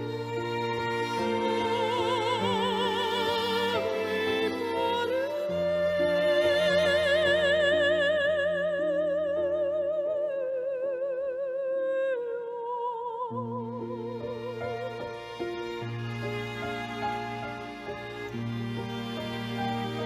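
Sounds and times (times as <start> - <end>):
soft instrumental accompaniment: 13.4 - 20.0.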